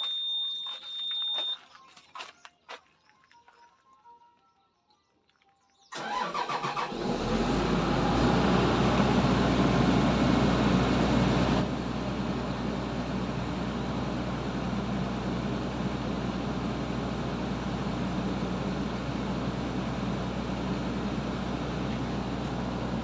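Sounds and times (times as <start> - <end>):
diesel engine starting and running: 5.9 - 23.0.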